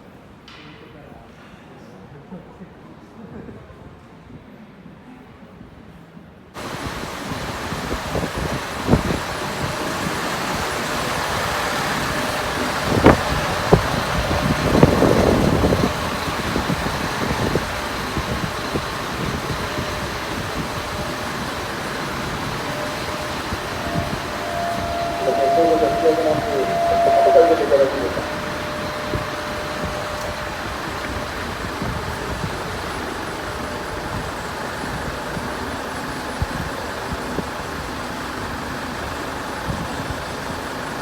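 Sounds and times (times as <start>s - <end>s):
vehicle engines running: 6.6s - 36.9s.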